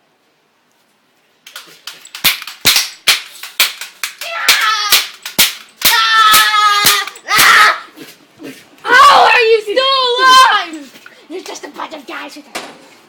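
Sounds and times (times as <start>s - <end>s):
toy cap guns popping: 1.4s - 7.5s
child shouting: 4.2s - 5.2s, 5.8s - 8.0s, 8.8s - 10.9s.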